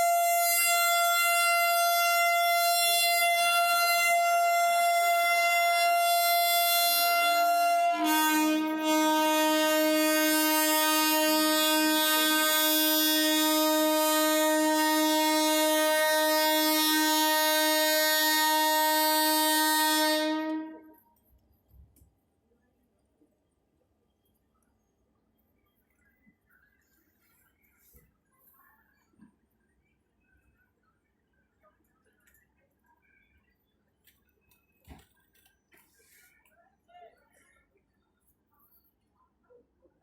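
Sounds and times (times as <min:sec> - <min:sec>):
locomotive twin-tone air horn: 0:00.0 - 0:21.0.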